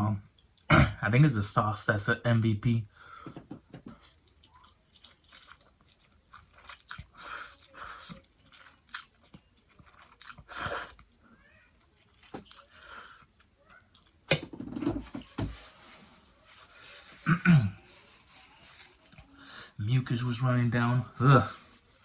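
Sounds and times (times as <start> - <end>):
chewing food: 3.7 - 14.3.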